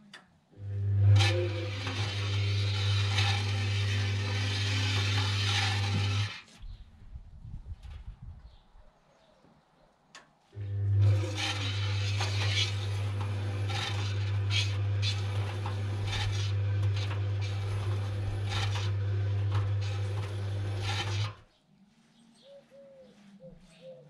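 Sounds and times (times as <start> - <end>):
washing machine motor humming: 0.6 - 6.3, 10.6 - 21.4
scraping rubbing noise: 0.8 - 6.8, 10.5 - 23.9.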